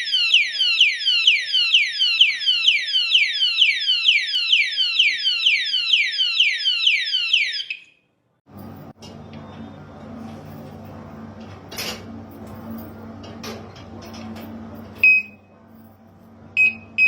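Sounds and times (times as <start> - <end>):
electronic siren chirps: 0.0 - 8.0
low background hum: 8.5 - 17.0.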